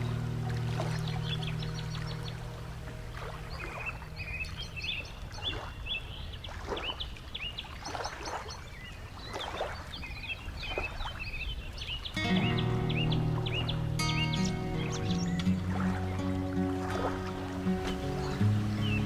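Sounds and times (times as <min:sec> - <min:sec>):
steady low rumble: 0:00.0 - 0:05.4
small birds chirping: 0:00.0 - 0:19.0
soft water splashes: 0:00.0 - 0:19.0.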